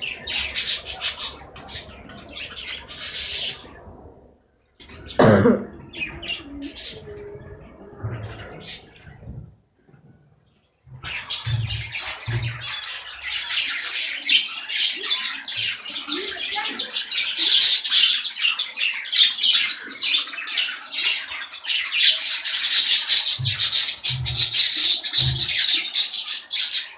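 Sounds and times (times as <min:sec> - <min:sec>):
low thumps: 0:04.8 - 0:12.7
budgerigars chattering and chirping: 0:11.0 - 0:26.9.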